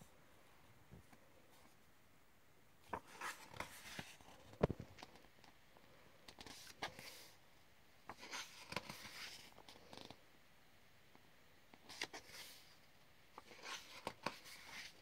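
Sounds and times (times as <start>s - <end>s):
pages turning: 2.8s - 5.3s, 8.1s - 10.2s, 13.4s - 15.0s.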